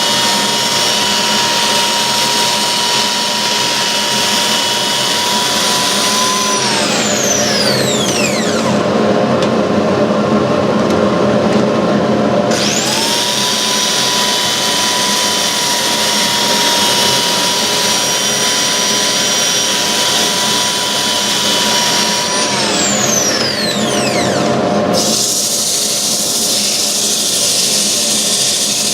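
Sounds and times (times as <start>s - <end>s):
wood sanding on lathe: 0.0s - 8.8s, 12.5s - 24.4s
electric drill motor whine: 0.0s - 9.3s, 12.4s - 28.9s.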